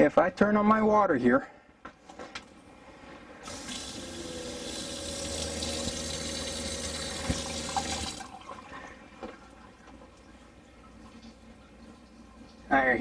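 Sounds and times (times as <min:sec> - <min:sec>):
water running from faucet: 0:03.4 - 0:08.8.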